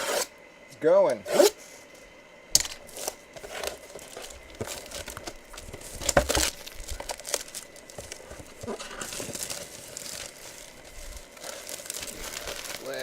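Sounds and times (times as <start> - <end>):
plastic wrapping crinkling: 2.8 - 13.0.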